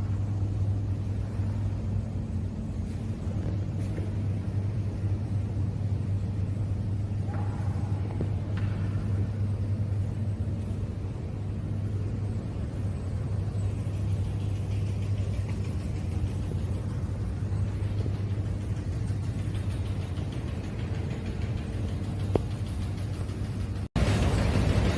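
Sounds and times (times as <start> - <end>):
machine hum and rumble: 0.0 - 24.9.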